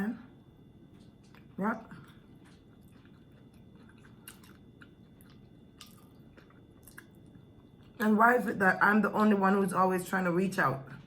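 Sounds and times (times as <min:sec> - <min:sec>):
person chewing food: 0:00.7 - 0:08.0.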